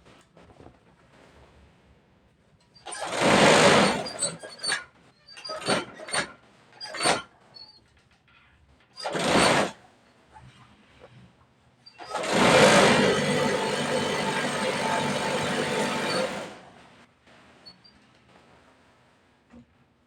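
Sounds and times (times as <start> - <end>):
industrial sewing machine stitching: 2.9 - 4.4, 9.0 - 9.7, 12.0 - 16.7.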